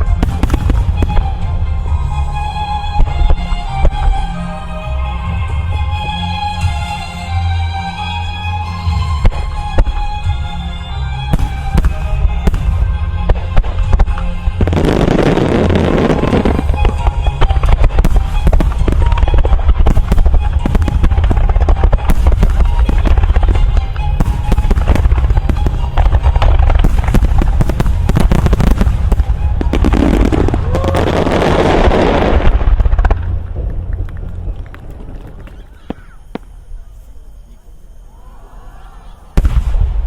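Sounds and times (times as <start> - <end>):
fireworks bursting: 0.0 - 4.3, 11.3 - 37.2, 39.3 - 40.0
music soundtrack: 0.0 - 35.3.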